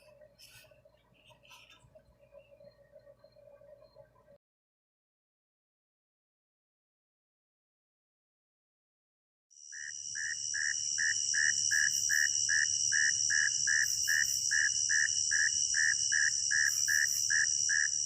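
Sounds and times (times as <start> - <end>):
insect pulsing chirp: 9.6 - 18.0
insects buzzing: 9.6 - 18.0.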